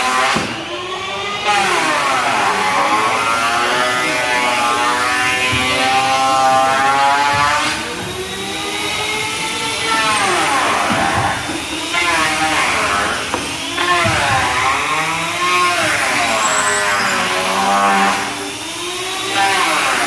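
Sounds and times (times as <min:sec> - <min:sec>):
motor running with swooping pitch: 0:00.0 - 0:20.0.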